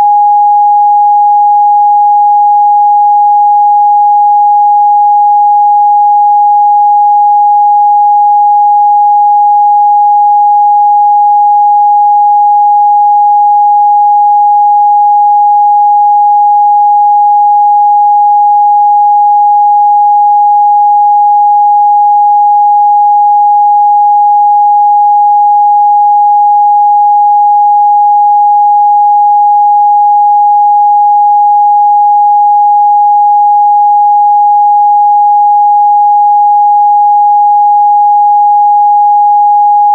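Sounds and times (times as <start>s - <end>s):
loud sine-wave test tone: 0.0s - 39.9s.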